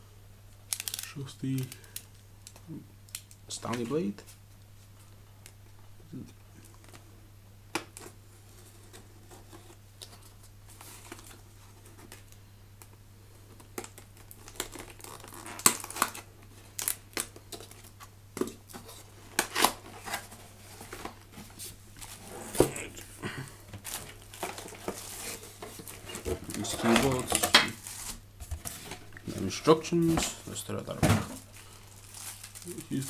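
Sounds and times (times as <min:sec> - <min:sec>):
packaging crinkling and tearing: 0:00.6 - 0:03.8, 0:13.5 - 0:18.1, 0:18.7 - 0:21.3, 0:23.7 - 0:33.0.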